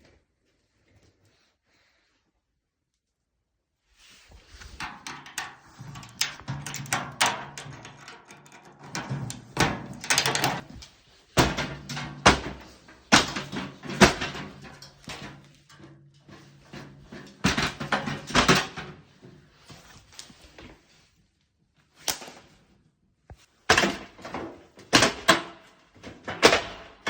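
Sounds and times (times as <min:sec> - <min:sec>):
clattering: 0:04.5 - 0:19.1
computer case being smashed: 0:08.8 - 0:10.7, 0:11.4 - 0:15.4, 0:17.0 - 0:19.0, 0:23.7 - 0:27.0.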